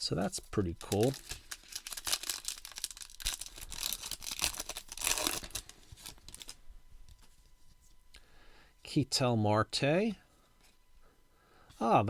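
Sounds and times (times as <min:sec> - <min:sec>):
wrapper tearing and crinkling: 0:00.4 - 0:06.6.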